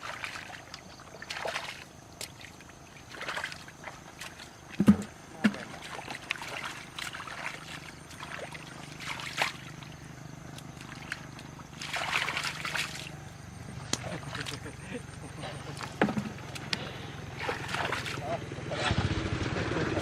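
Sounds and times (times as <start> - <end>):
water trickling and splashing: 0.0 - 18.5.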